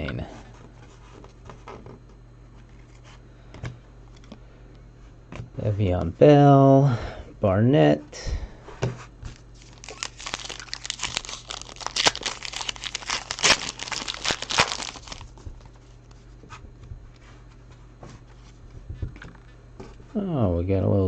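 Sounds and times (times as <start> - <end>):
foil wrapper crinkling and tearing: 9.4 - 15.8.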